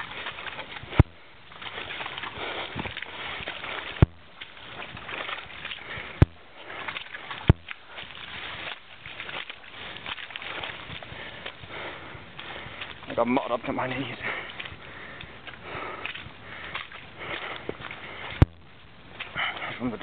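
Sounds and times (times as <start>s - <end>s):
footsteps squelching in mud: 0.0s - 20.0s
sharp knocks: 4.0s - 4.5s, 6.2s - 6.4s, 7.0s - 7.8s, 18.4s - 18.7s.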